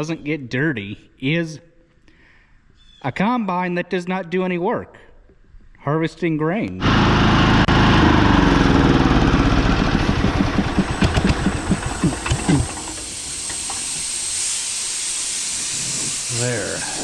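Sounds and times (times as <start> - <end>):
air compressor engine running: 6.8 - 17.0
air hissing: 10.4 - 17.0.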